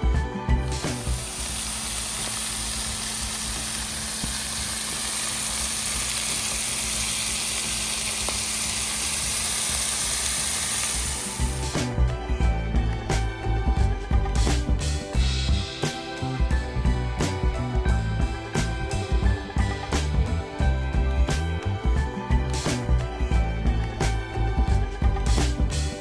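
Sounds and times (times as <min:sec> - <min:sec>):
steaks sizzling in a pan: 0:00.6 - 0:12.0.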